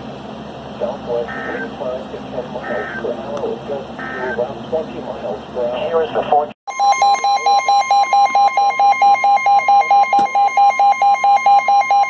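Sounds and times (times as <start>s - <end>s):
steady high alert tone: 0.9s - 4.8s, 5.8s - 12.0s
lower tone beeping rapidly: 1.2s - 1.8s, 2.5s - 3.2s, 3.9s - 4.5s, 6.7s - 12.0s.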